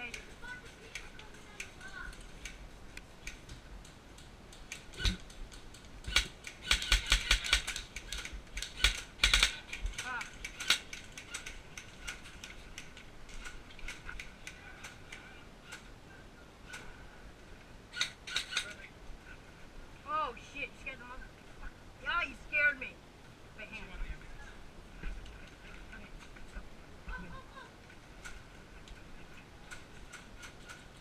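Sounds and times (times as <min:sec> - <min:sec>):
sharp mechanical clicks and knocks: 0:03.2 - 0:15.9, 0:17.9 - 0:18.8, 0:29.7 - 0:31.0.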